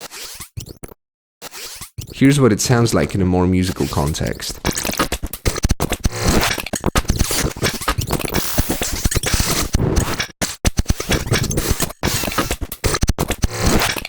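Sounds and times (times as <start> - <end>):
glitchy electronic stutters: 3.7 - 14.0.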